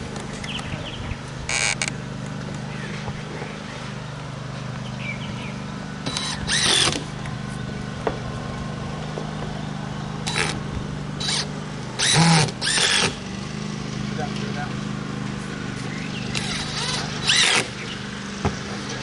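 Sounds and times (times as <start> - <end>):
steady low hum: 0.0 - 19.0
power drill driving screws: 6.1 - 7.1, 10.2 - 10.6, 11.2 - 13.2, 16.3 - 17.8.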